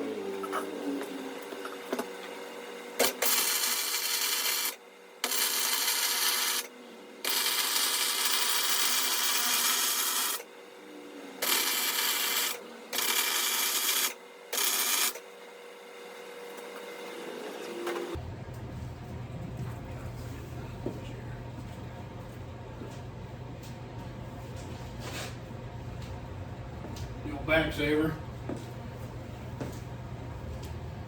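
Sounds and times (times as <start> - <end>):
welding arc crackling hiss: 3.0 - 6.7, 11.4 - 14.0.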